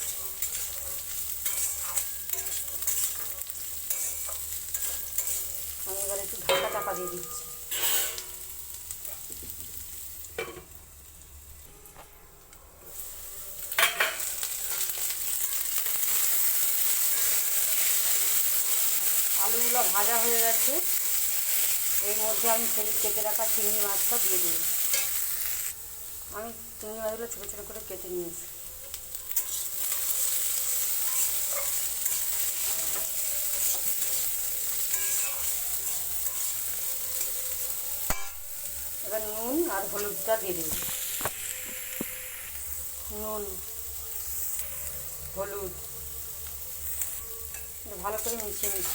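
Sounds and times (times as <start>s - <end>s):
spatula scraping a pan: 0.0s - 5.7s, 6.4s - 8.5s, 29.3s - 36.6s
potatoes sizzling in oil: 0.0s - 11.7s, 12.9s - 48.9s.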